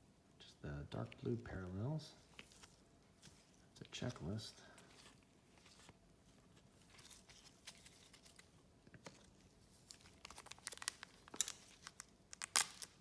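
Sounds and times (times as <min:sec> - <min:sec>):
trading cards and wrapper crinkling: 0:01.0 - 0:13.0.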